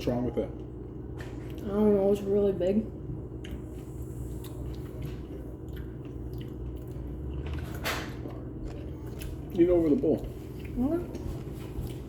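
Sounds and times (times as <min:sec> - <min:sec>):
person chewing pickle: 0:03.4 - 0:12.0.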